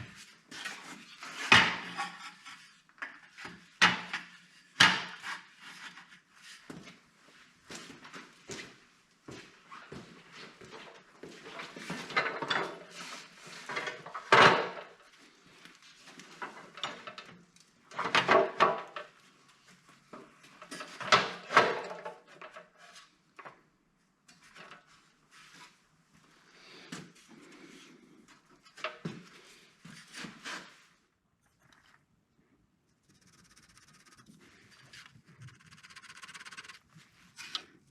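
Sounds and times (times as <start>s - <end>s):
tool parts knocking and scraping: 33.1s - 37.8s.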